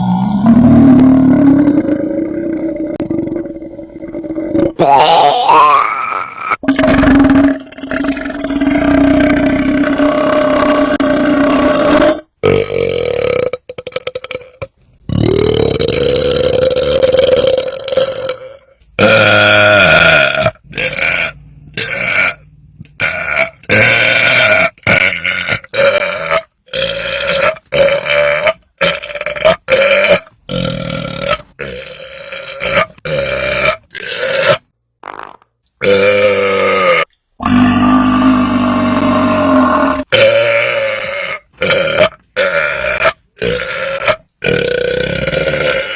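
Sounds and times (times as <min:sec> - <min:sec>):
person belching loudly: 0:00.0 - 0:45.9.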